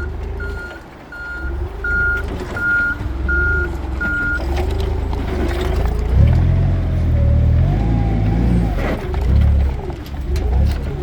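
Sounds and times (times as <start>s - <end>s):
forklift backup alarm beeping: 0.0s - 8.8s
forklift engine running: 0.0s - 11.0s.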